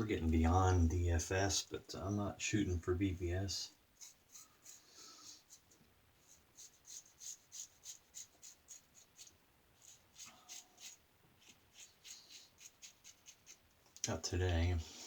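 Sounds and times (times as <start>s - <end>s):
razor scraping stubble: 4.0s - 14.7s.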